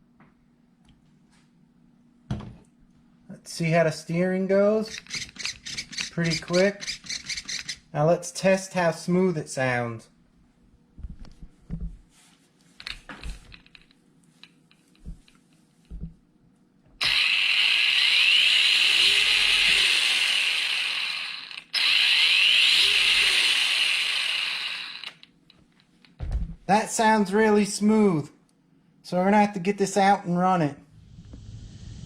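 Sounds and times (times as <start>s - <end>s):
toy truck motor whining: 4.9s - 7.8s, 17.0s - 25.3s.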